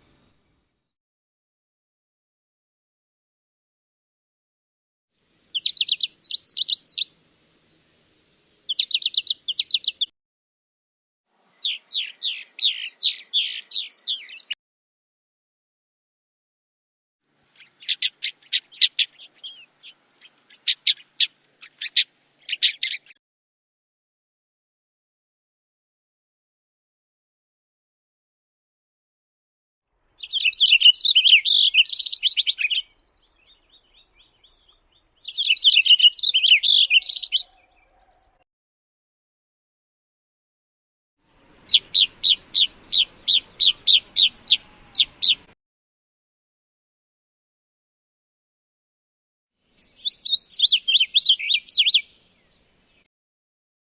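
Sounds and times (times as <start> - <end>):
bird calling sharp notes: 11.6 - 14.6, 17.6 - 23.2, 41.7 - 45.6, 49.8 - 52.1.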